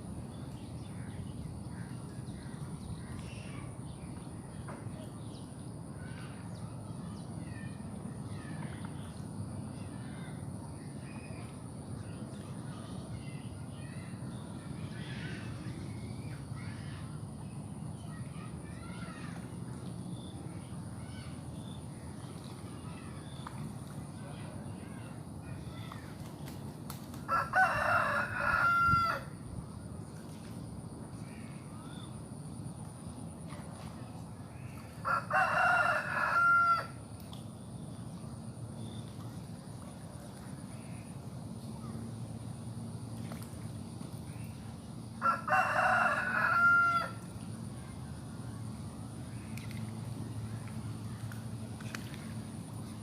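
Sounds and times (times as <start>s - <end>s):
rooster crowing: 27.3s - 29.3s, 35.0s - 37.0s, 45.2s - 47.2s.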